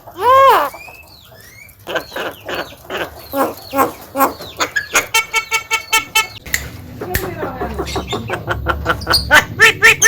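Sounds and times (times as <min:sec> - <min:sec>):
bird calling and chattering: 0:07.3 - 0:10.0.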